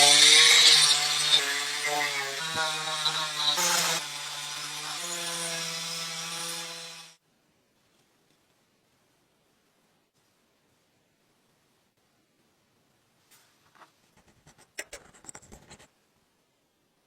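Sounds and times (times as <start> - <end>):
handheld power tool motor: 0.0 - 7.2.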